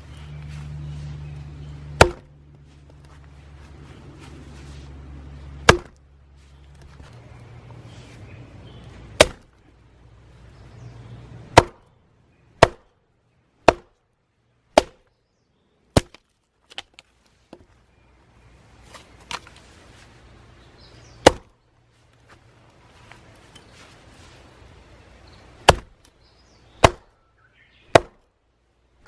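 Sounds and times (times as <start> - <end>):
hatchet chopping logs: 1.9 - 2.4, 5.5 - 6.0, 9.0 - 9.6, 11.5 - 11.9, 12.6 - 12.9, 13.6 - 14.0, 14.7 - 15.1, 15.9 - 17.8, 21.2 - 21.6, 25.6 - 27.1, 27.8 - 28.2.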